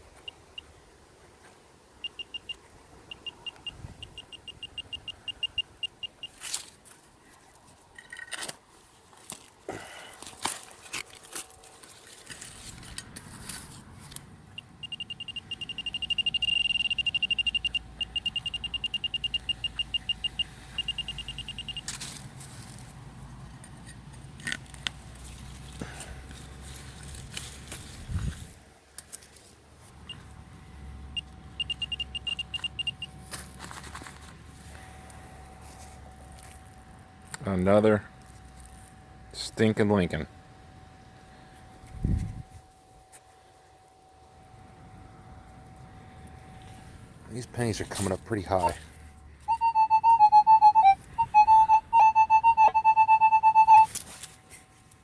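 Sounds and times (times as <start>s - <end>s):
pinpointer beeping: 2.0s - 6.4s, 14.5s - 22.0s, 31.0s - 33.2s, 49.5s - 53.9s
digging tools in soil: 6.2s - 15.8s, 20.4s - 30.3s, 32.6s - 39.4s, 46.6s - 49.2s.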